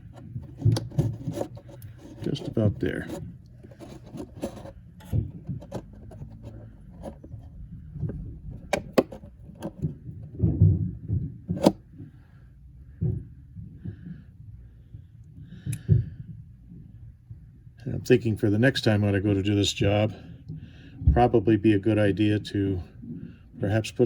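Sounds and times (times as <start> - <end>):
handling clicks and thumps: 0.0 - 12.2.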